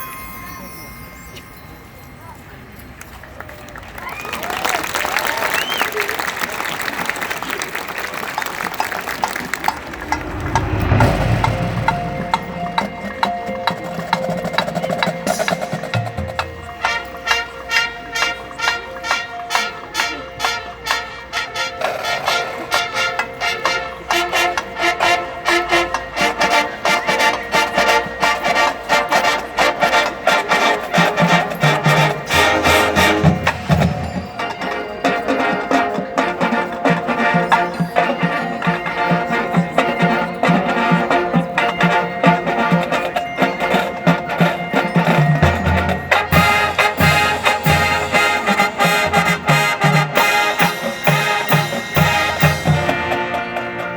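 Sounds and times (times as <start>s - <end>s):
marching band playing: 4.0s - 53.9s
heavy low drum hits: 9.6s - 14.0s.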